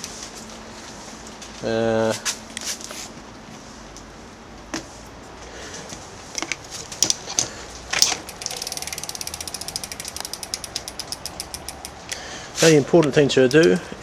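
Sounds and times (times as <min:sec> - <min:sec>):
freewheel hub ticking: 0:08.0 - 0:12.3.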